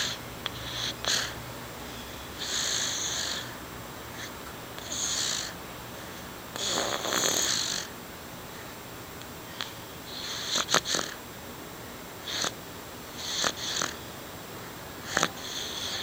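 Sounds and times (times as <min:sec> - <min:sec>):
baby snoring: 0:00.0 - 0:01.4, 0:02.4 - 0:05.6, 0:06.5 - 0:07.9, 0:09.6 - 0:11.2, 0:12.2 - 0:12.6, 0:13.2 - 0:14.1, 0:15.0 - 0:16.0.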